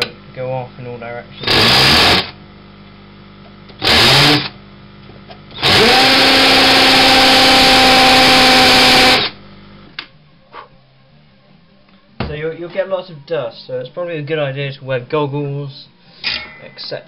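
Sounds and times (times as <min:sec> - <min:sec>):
electric drill whining: 0:01.4 - 0:02.4, 0:03.8 - 0:04.6, 0:05.5 - 0:09.5.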